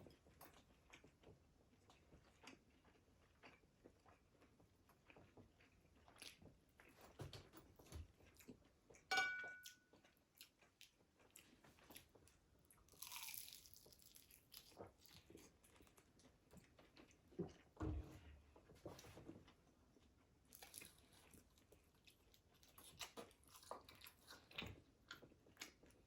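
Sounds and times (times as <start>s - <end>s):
chewing crispy fried food: 0.0s - 9.1s, 9.7s - 17.8s, 18.6s - 26.0s
ringing clink: 9.1s - 9.7s.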